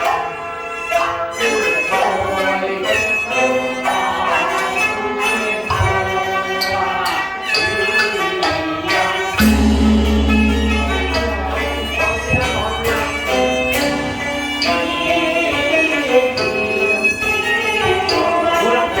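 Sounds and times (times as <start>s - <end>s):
wind and string instrument melody: 0.0s - 19.0s
sharp percussion strikes: 9.3s - 16.0s.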